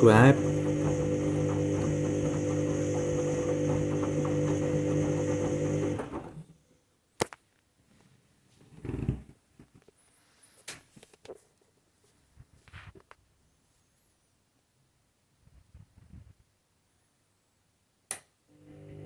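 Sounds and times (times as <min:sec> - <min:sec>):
washing machine motor hum: 0:00.0 - 0:06.5, 0:18.5 - 0:19.0.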